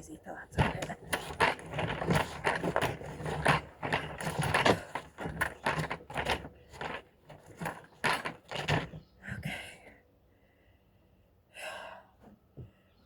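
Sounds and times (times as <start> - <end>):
plunger strokes in laundry water: 0.6 - 9.0.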